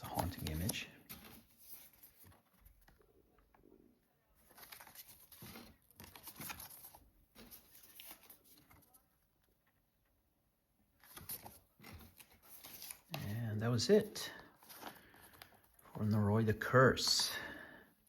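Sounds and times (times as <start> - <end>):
paper cards and packaging rustling: 0.0 - 17.8.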